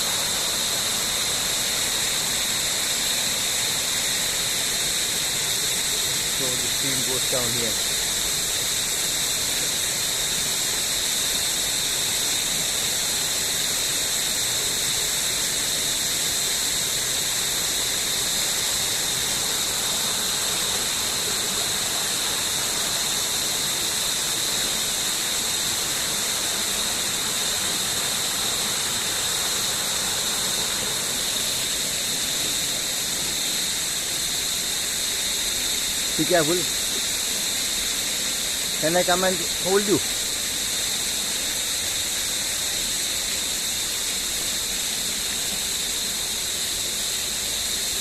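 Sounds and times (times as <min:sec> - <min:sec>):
stream rushing over rocks: 0:17.6 - 0:41.0.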